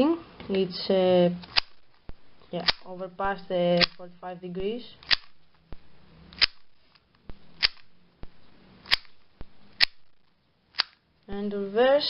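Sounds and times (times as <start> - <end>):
puzzle cube layers clicking: 2.4 - 4.2, 5.0 - 5.7, 6.3 - 10.1.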